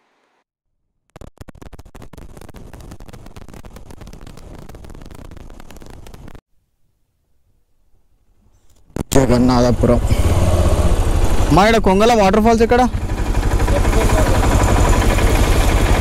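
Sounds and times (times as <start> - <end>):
crackling microphone scratching: 1.1 - 6.4, 8.3 - 9.7.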